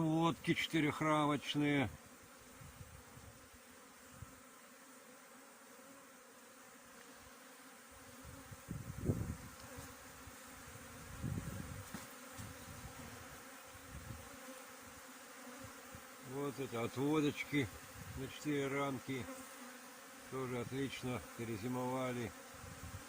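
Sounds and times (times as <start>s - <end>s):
honeybees humming: 0.0s - 23.0s.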